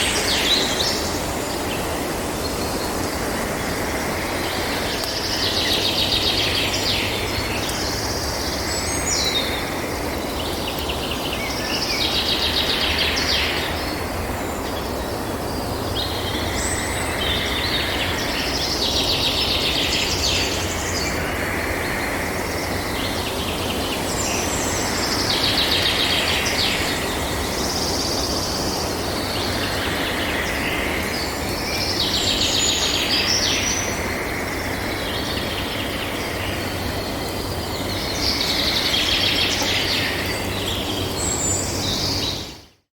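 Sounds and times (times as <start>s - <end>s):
background hiss and rumble: 0.0s - 42.7s
birds chirping: 0.0s - 42.8s.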